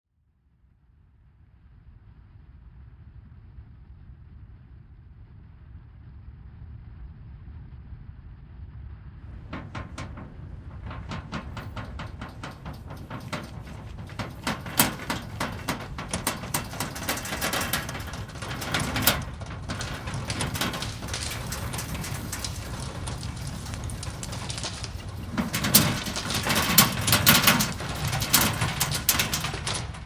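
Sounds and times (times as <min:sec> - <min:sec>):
low earthquake rumble: 0:09.3 - 0:30.0
rapid rattling and crackling: 0:09.3 - 0:30.0.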